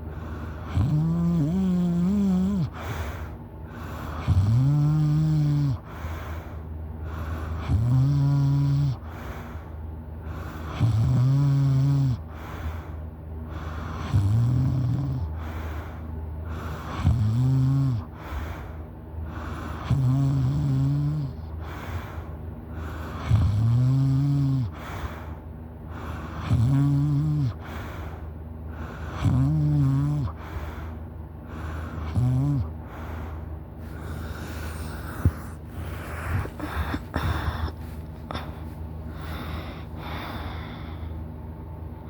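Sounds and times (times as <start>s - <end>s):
soft breathing: 0.0s - 0.8s, 2.6s - 4.4s, 5.7s - 7.7s, 8.9s - 10.9s, 12.2s - 14.2s, 15.3s - 17.1s, 18.0s - 20.0s, 21.3s - 23.5s, 24.6s - 26.6s, 27.5s - 29.4s, 30.2s - 41.6s
person snoring: 0.2s - 6.4s, 7.3s - 9.4s, 10.5s - 12.5s, 13.6s - 15.6s, 16.5s - 18.4s, 19.3s - 25.3s, 25.9s - 27.8s, 28.8s - 30.9s, 31.5s - 41.1s.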